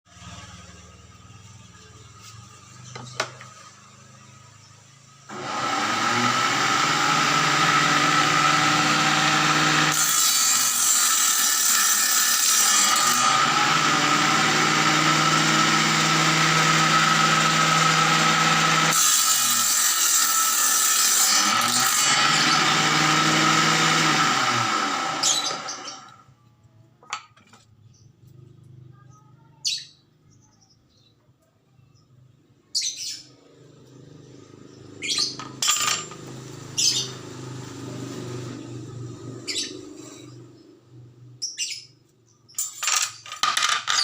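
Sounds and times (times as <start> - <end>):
table saw running with whine: 0.1 - 26.3
saw blade cutting wood: 5.3 - 26.2.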